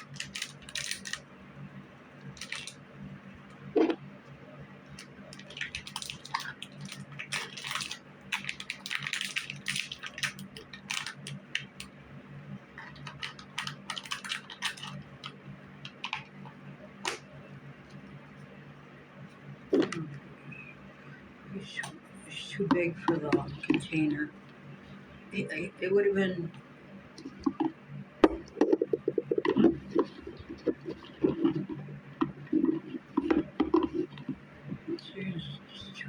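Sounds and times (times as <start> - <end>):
small items clicking and rustling: 0.0 - 1.2, 2.4 - 2.8, 5.0 - 11.9, 12.8 - 16.3
steady low hum: 0.0 - 36.0.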